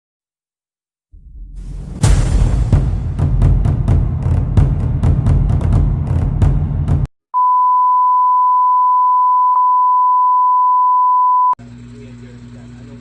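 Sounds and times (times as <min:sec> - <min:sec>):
intro music with drum hits: 0:01.2 - 0:07.1.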